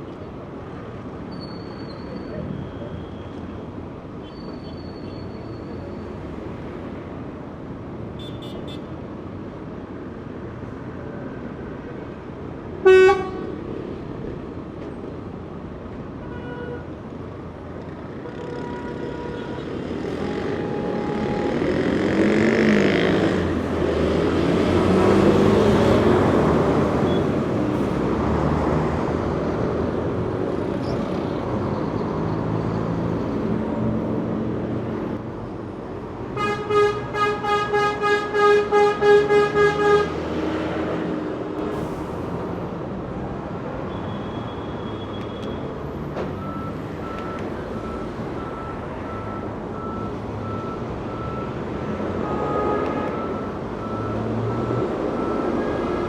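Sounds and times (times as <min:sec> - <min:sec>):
city street traffic: 0:00.0 - 0:56.0
car horn blast: 0:12.8 - 0:13.5, 0:36.4 - 0:40.2.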